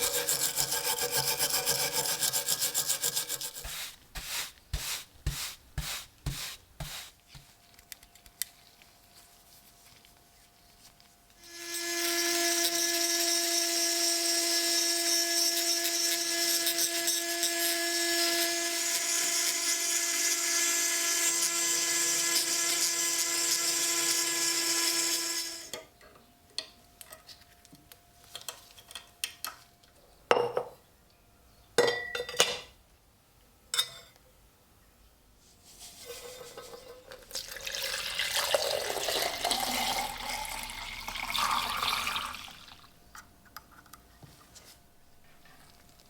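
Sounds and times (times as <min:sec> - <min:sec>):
rotary power tool whining: 0:11.4 - 0:25.7.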